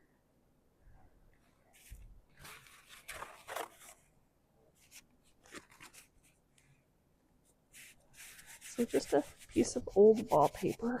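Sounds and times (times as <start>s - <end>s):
wallpaper rustling and crinkling: 1.7s - 4.2s, 4.8s - 6.7s.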